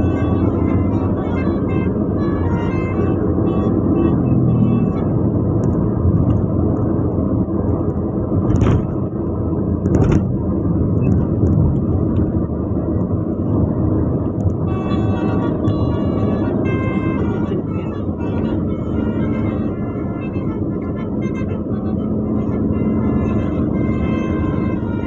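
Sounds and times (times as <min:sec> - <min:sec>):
vehicle road rumble: 0:00.0 - 0:25.0.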